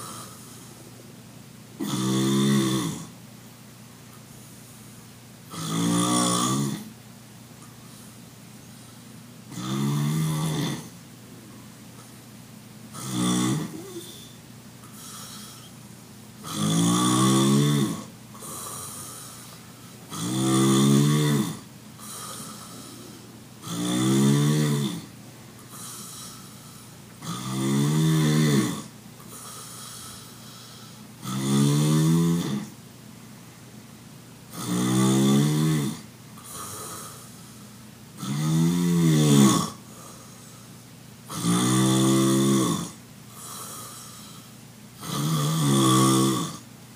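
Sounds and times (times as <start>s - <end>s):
person snoring: 0.0s - 0.8s, 1.8s - 3.2s, 5.5s - 6.9s, 8.8s - 11.0s, 12.9s - 15.8s, 16.4s - 25.1s, 25.7s - 32.8s, 34.5s - 40.7s, 41.3s - 46.7s.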